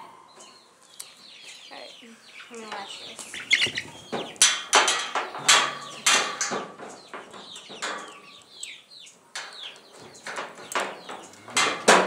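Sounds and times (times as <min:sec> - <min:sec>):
chickens clucking: 0:00.0 - 0:12.0
metal gate clanking: 0:04.2 - 0:08.7, 0:09.3 - 0:12.0.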